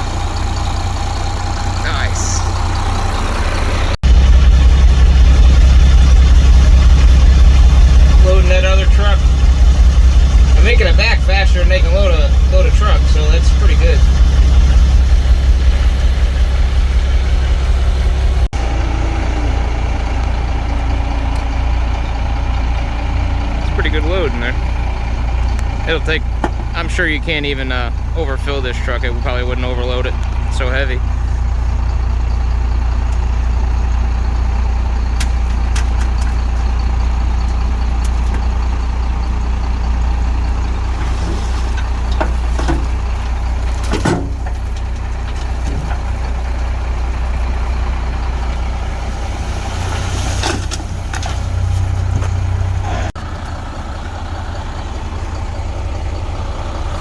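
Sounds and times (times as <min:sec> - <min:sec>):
diesel truck engine running: 0:00.0 - 0:57.0
knocks and clatters: 0:34.6 - 0:48.7.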